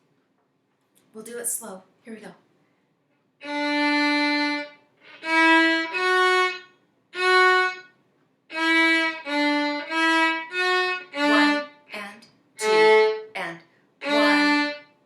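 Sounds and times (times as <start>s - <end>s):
violin playing slow melody: 3.4s - 7.9s, 8.5s - 11.9s, 12.6s - 13.3s, 14.0s - 15.0s.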